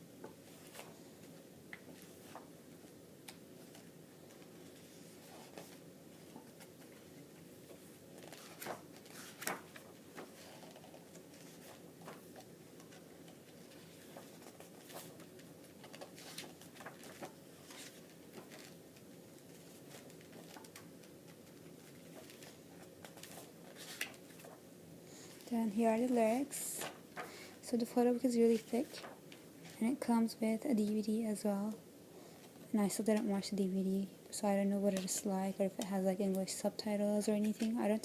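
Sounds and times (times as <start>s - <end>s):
low room hum: 0.0s - 38.0s
soft paper rustles: 0.2s - 31.8s, 32.4s - 38.0s
pages turning: 0.4s - 24.6s, 28.5s - 29.9s.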